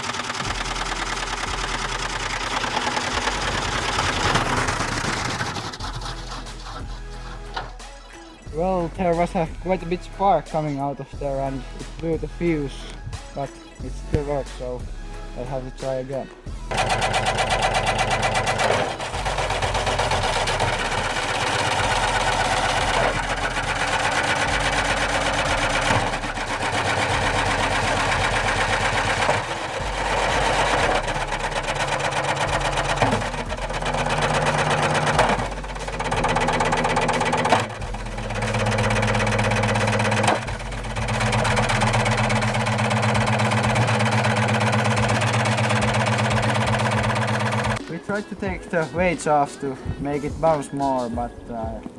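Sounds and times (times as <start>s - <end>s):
washing machine drum spinning: 0.0s - 6.6s, 16.7s - 47.8s
motor hum: 0.0s - 8.1s, 16.5s - 47.8s
hard objects clattering in drum: 16.7s - 47.8s.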